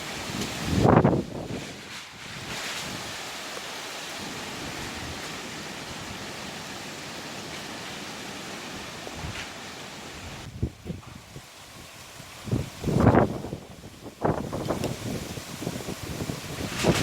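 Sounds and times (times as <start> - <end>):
strong wind rushing: 0.0 - 3.2, 10.2 - 17.0.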